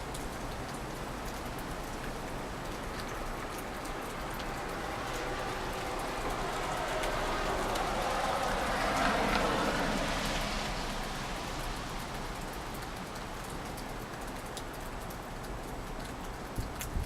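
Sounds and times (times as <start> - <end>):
steady rain: 0.0 - 17.0
drops ticking on surfaces: 0.1 - 7.9, 11.6 - 17.0
broad rushing noise: 4.0 - 13.4.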